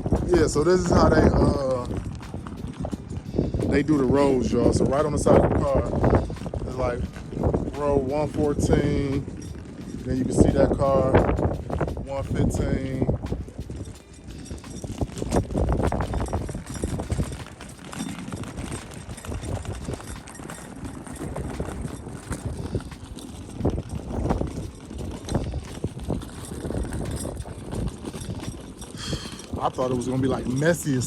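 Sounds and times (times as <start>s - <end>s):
footsteps crunching on gravel: 0.0s - 31.0s.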